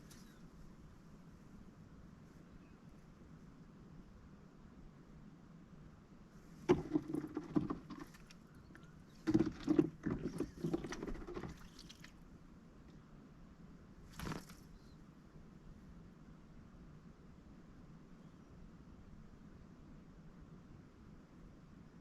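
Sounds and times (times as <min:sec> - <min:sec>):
duck splashing in water: 0:06.6 - 0:08.4, 0:09.2 - 0:12.2.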